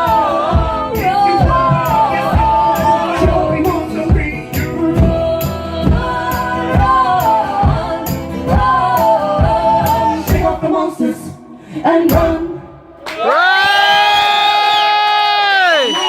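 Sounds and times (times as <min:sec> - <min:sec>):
steady drum beat: 0:00.0 - 0:10.6
live band playing: 0:00.0 - 0:11.0
voices singing in harmony: 0:00.0 - 0:13.0.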